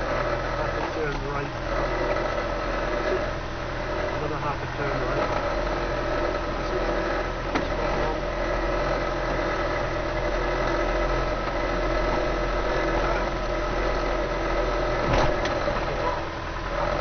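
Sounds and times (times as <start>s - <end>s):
vehicle engine at low revs: 0.0s - 17.0s
loud clunk: 7.5s - 7.8s, 15.0s - 16.2s.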